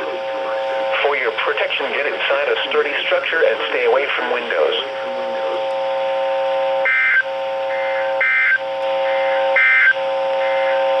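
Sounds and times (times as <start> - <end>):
steady buzzing tone: 0.0 - 11.0.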